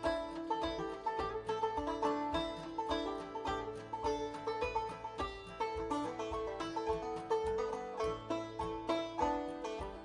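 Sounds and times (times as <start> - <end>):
plucked banjo: 0.0 - 10.0
steady beat: 0.0 - 10.0.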